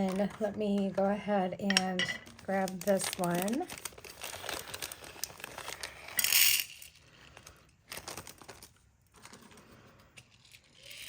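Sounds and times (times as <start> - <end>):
beads clicking and clattering: 2.2 - 9.6.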